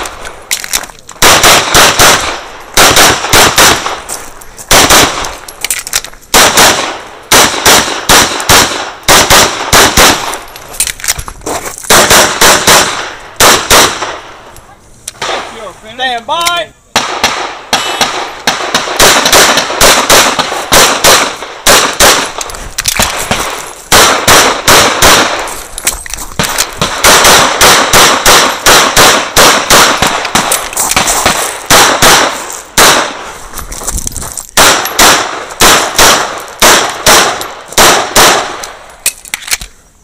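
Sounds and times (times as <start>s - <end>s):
pistol shots: 1.2s - 4.1s, 4.7s - 5.4s, 6.3s - 10.4s, 11.9s - 14.4s, 15.2s - 15.6s, 16.9s - 25.6s, 26.4s - 33.3s, 34.6s - 38.8s.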